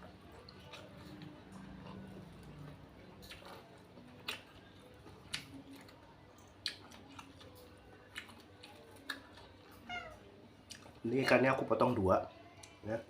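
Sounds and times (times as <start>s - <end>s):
person chewing: 0.0s - 9.8s, 10.6s - 11.0s.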